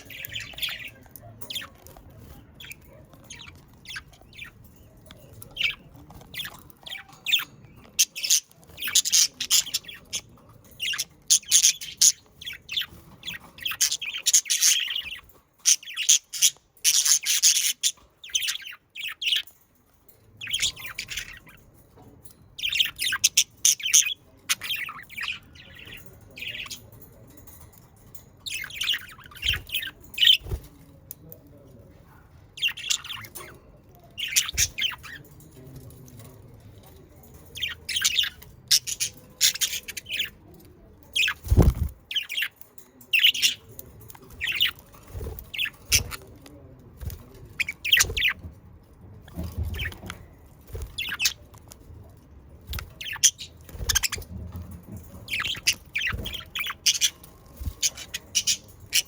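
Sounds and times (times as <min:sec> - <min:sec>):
budgerigars chirping: 0:53.0 - 0:54.3, 0:55.2 - 0:59.0.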